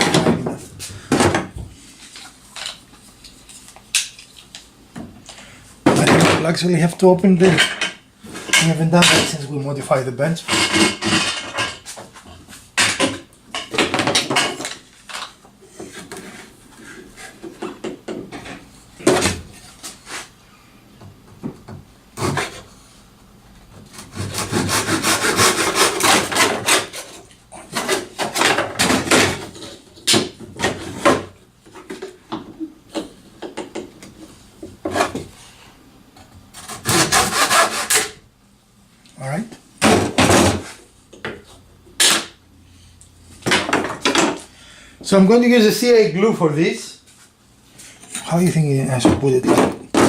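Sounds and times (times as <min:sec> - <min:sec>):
wood scraped by hand: 0:36.6 - 0:38.1.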